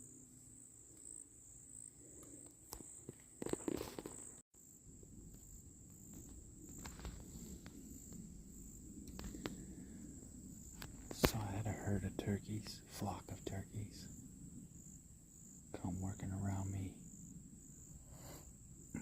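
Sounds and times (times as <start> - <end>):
insects trilling: 0.0 - 19.0
rustles and clicks: 2.3 - 4.4, 5.3 - 8.3.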